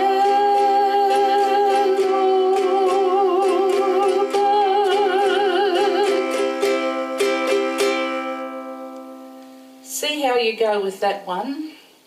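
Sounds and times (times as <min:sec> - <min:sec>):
person singing with vibrato: 0:00.0 - 0:08.9
ukulele strumming: 0:00.0 - 0:09.9.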